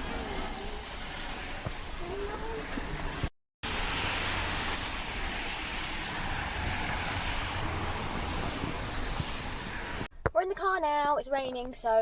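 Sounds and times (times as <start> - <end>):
car engine and road rumble: 0.0 - 10.1
rain hiss: 0.0 - 10.1.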